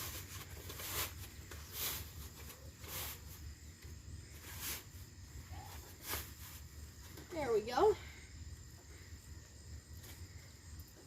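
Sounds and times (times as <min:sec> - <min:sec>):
plastic parts rustling and scraping: 0:00.0 - 0:03.4.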